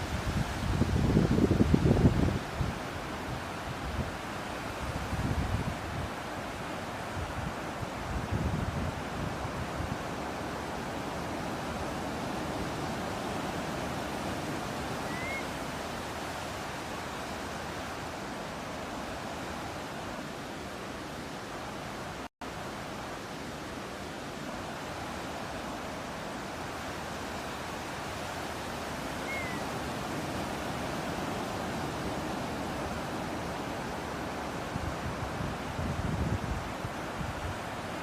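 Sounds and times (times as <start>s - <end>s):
ocean surf: 0.0s - 38.0s
faint short bird chirp: 15.1s - 15.5s, 29.2s - 29.6s.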